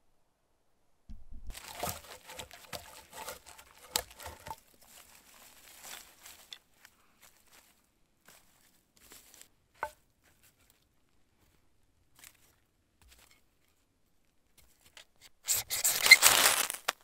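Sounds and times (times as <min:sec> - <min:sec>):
crinkling crunching rustle: 0:01.5 - 0:07.7, 0:15.7 - 0:17.0.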